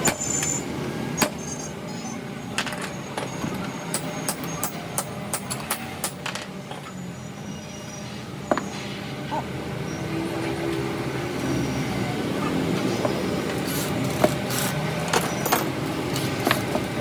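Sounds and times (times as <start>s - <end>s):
metal tools clicking and tapping: 3.9s - 6.5s, 15.1s - 15.8s.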